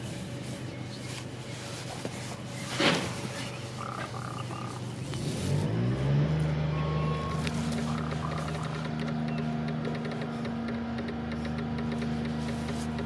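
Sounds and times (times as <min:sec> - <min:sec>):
construction machinery hum: 0:00.0 - 0:13.0
heavy engine revving: 0:02.7 - 0:13.0
raven calling: 0:02.9 - 0:05.0, 0:06.7 - 0:10.2.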